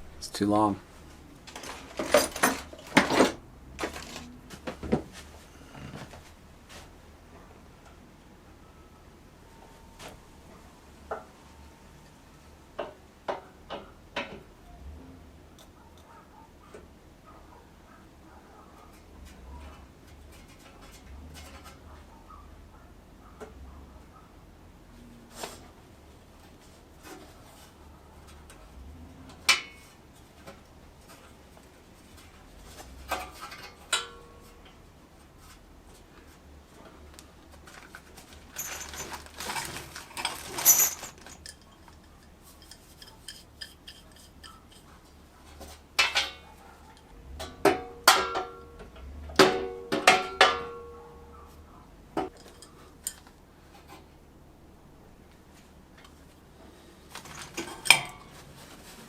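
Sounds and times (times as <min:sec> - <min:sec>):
scraping and rustling: 0:01.0 - 0:07.0, 0:25.1 - 0:47.0, 0:55.4 - 0:59.0
metal tools clinking: 0:01.5 - 0:03.4, 0:37.6 - 0:45.0, 0:52.3 - 0:53.9, 0:57.1 - 0:58.4.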